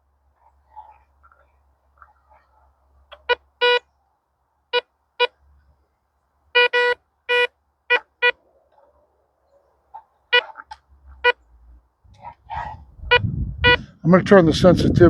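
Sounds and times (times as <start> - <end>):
metal detector beeping: 3.2 - 3.9, 6.6 - 8.4, 10.3 - 10.6, 13.0 - 13.9.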